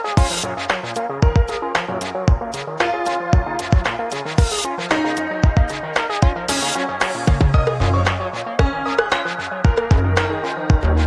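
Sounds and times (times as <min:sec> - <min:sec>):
electronic music: 0:00.0 - 0:11.0
kick drum beat: 0:01.2 - 0:01.6, 0:02.3 - 0:02.5, 0:05.4 - 0:06.4, 0:07.3 - 0:07.8, 0:08.6 - 0:08.8, 0:09.7 - 0:10.1, 0:10.7 - 0:11.0
bass line: 0:07.3 - 0:08.4, 0:09.8 - 0:11.0.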